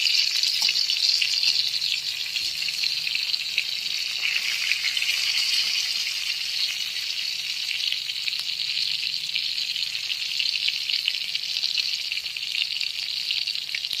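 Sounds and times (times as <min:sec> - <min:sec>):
omelette sizzling in oil: 0:00.0 - 0:14.0.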